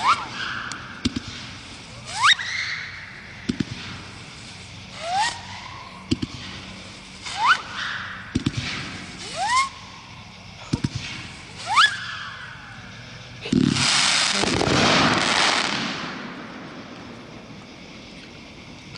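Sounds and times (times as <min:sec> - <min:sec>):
rising firework whistle: 0:00.0 - 0:18.1
crackling firework hiss: 0:00.0 - 0:18.9
firework launch thumps: 0:01.0 - 0:01.6, 0:03.4 - 0:04.1, 0:08.3 - 0:09.3, 0:13.4 - 0:16.5.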